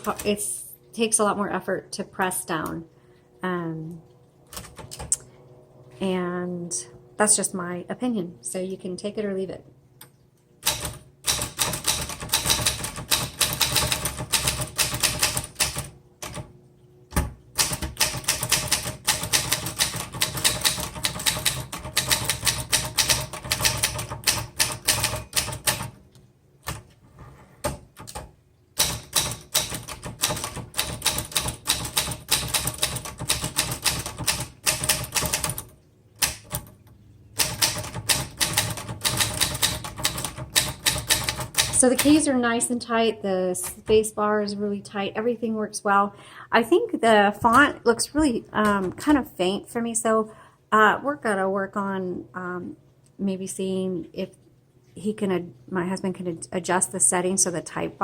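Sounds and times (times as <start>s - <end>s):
manual typewriter typing: 0.0s - 0.5s, 4.5s - 5.2s, 10.6s - 16.5s, 17.5s - 26.0s, 27.6s - 36.8s, 37.4s - 42.4s.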